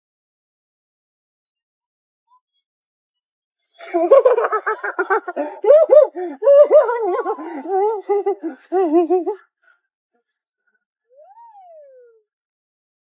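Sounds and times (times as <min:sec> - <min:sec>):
high-pitched laughter: 0:03.8 - 0:09.4.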